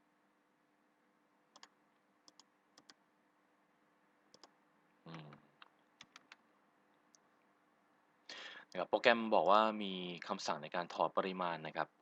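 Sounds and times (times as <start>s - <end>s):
faint steady hum: 0.0s - 12.0s
computer mouse clicks: 1.5s - 3.0s, 4.3s - 7.3s.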